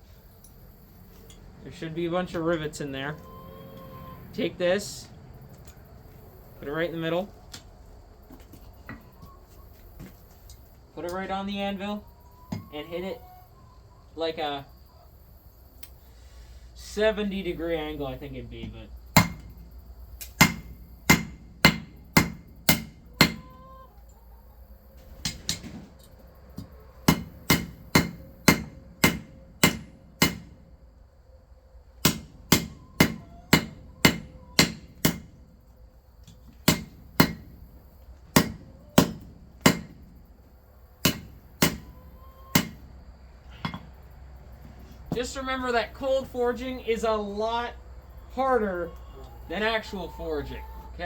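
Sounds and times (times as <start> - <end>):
hammer striking nail on anvil: 19.2 - 19.5, 20.3 - 23.4, 27.1 - 30.5, 32.0 - 35.3, 36.6 - 37.5, 38.4 - 40.0, 41.0 - 41.9, 42.5 - 42.8.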